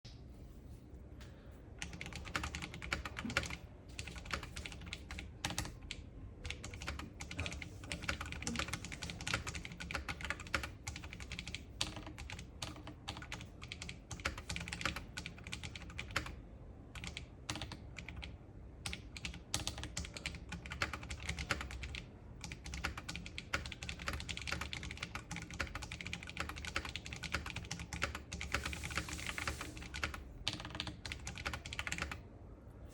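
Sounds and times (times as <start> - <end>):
mechanical keyboard typing: 1.8 - 32.2.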